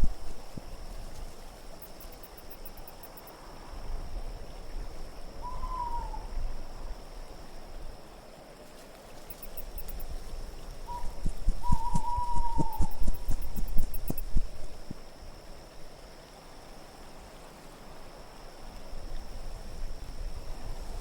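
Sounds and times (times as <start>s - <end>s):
gusting wind: 0.0s - 2.8s, 9.4s - 15.2s
owl hooting: 5.4s - 6.3s, 10.9s - 14.8s.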